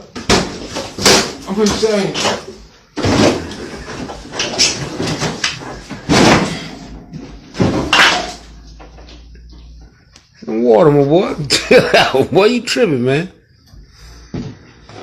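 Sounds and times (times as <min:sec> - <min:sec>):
refrigerator thuds and rattles: 0:00.0 - 0:08.4.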